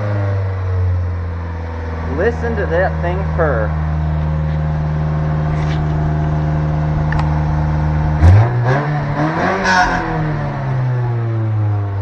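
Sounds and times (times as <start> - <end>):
car engine idling and revving: 0.0 - 12.0.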